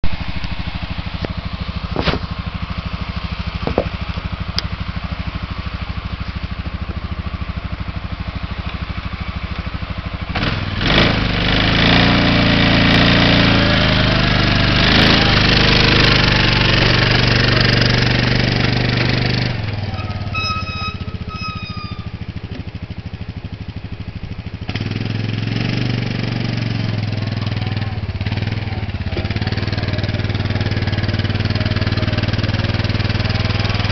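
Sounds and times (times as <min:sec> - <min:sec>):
atv engine idling and revving: 0:00.0 - 0:33.9
high squeal: 0:19.8 - 0:22.4.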